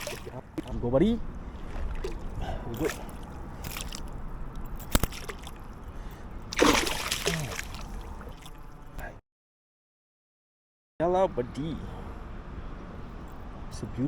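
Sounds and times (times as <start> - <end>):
water splash: 0.0 - 0.7, 1.5 - 4.1, 4.8 - 5.7, 6.5 - 8.8
river water sloshing and trickling: 0.0 - 9.0.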